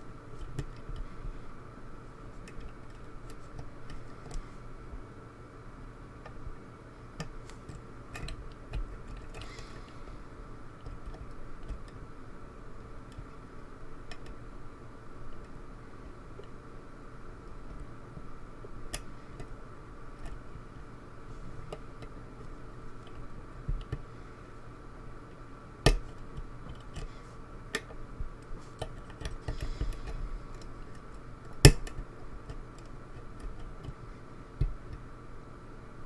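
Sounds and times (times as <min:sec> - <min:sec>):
lock pick metallic clicks: 0:25.8 - 0:27.1, 0:28.8 - 0:34.0.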